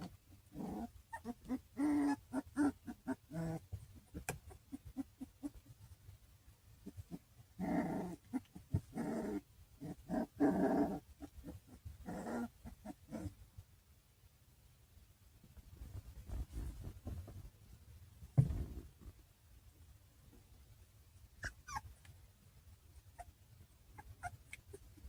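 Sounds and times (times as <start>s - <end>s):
puppy yipping: 21.4s - 22.0s, 23.9s - 24.9s.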